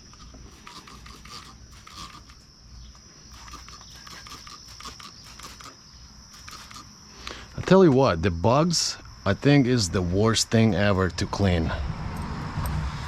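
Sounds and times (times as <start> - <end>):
scrubbing and scraping with clicks: 0.0 - 6.9.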